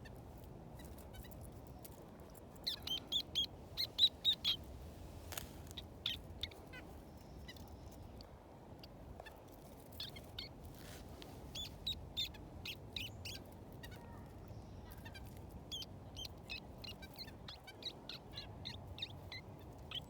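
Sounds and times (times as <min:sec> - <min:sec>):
low background hum: 0:00.0 - 0:20.0
small birds chirping: 0:00.0 - 0:20.0.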